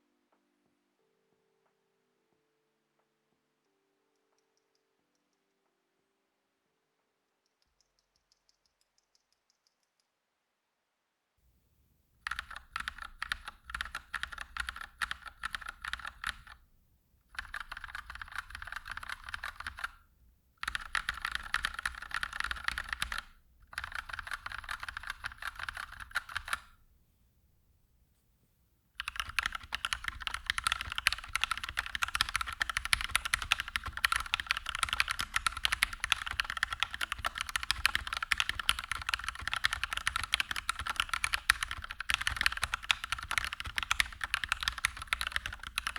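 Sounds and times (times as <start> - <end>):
typing on mechanical keyboard: 12.2 - 16.6, 17.3 - 26.8, 29.0 - 45.9.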